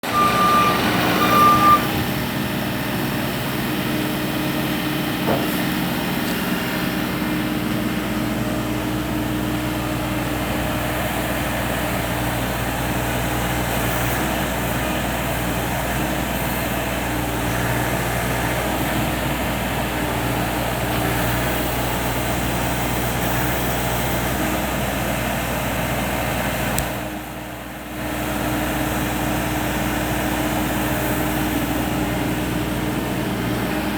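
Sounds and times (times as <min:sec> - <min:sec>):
short machine beeps: 0:00.0 - 0:02.1
diesel engine running: 0:00.0 - 0:33.9.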